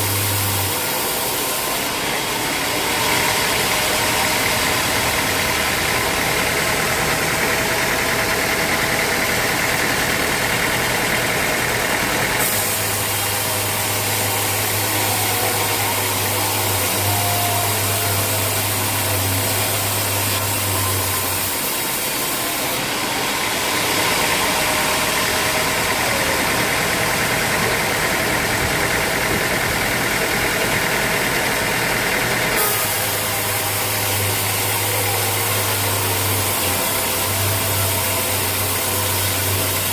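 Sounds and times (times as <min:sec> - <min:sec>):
sawmill machinery running: 0:00.0 - 0:39.9.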